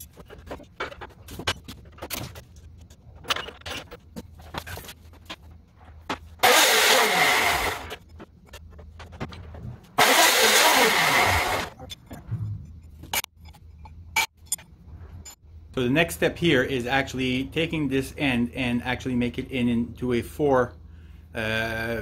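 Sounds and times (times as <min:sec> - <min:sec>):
power cutter slicing steel: 0:06.4 - 0:08.0, 0:10.0 - 0:11.8
metal clicking and knocking: 0:07.9 - 0:10.0.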